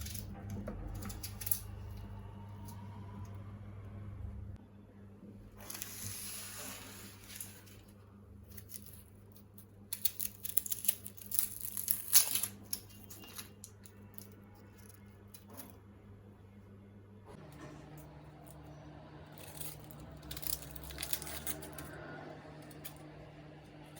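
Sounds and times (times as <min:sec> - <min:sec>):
steady low hum: 0:00.0 - 0:10.0, 0:13.8 - 0:23.9.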